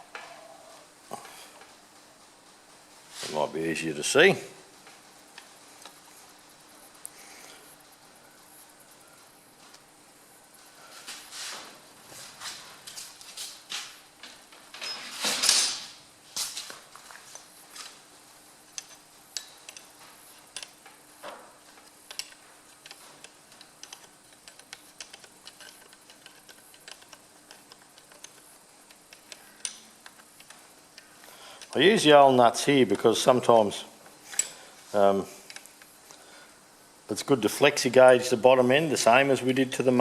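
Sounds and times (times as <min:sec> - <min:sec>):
metallic clicks of tools: 0:18.7 - 0:20.9, 0:21.7 - 0:31.8.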